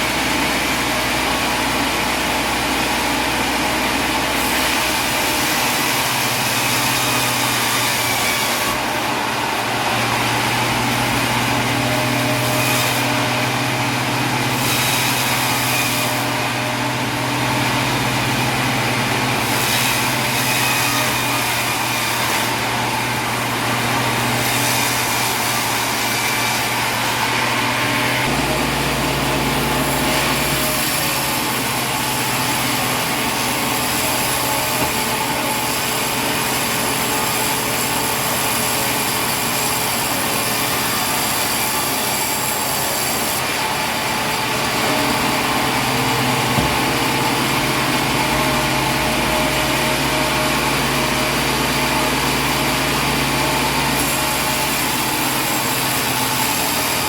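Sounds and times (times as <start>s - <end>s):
motor humming: 28.2s - 37.2s.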